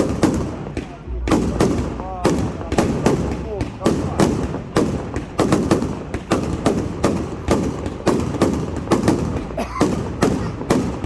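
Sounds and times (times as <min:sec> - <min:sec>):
fireworks bangs with echoes: 0:00.0 - 0:11.0.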